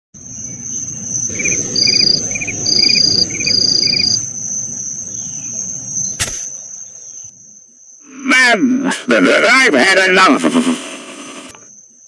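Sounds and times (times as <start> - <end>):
low rumble: 0.2 - 6.1
insect chirps: 0.2 - 12.0
insects trilling: 0.2 - 12.0
high insect buzzes: 0.3 - 8.2
sharp click: 6.2 - 6.5.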